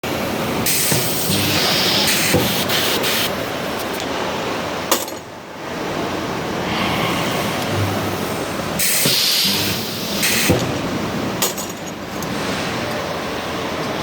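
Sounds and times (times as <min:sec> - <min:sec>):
welding machine hissing air: 0:00.7 - 0:03.9, 0:06.7 - 0:10.6.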